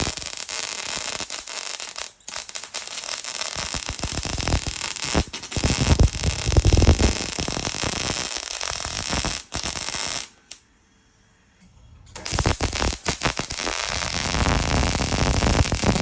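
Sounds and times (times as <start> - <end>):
welding arc crackling: 0.0 - 10.6, 12.1 - 16.0.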